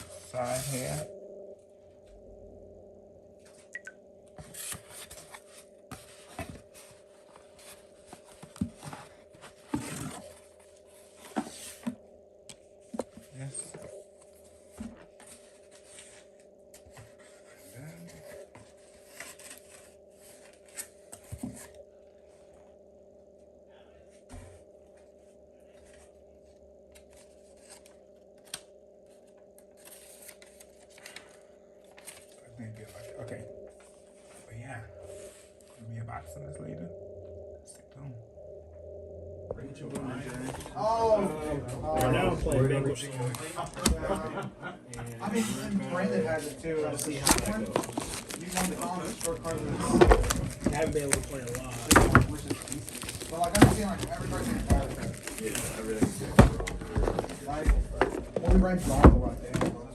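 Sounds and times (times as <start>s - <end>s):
low hum: 0.0s - 59.9s
packaging rustling and scraping: 4.4s - 12.0s, 46.3s - 59.2s.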